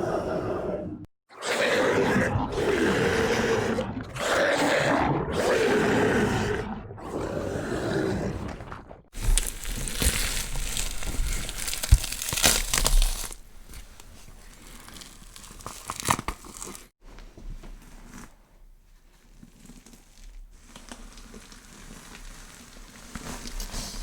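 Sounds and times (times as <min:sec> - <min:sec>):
monster growl: 0:00.0 - 0:09.1.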